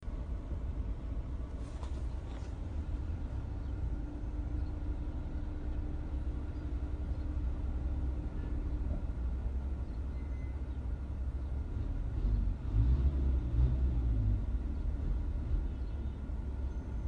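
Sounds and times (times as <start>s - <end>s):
car engine idling: 0.0s - 11.7s.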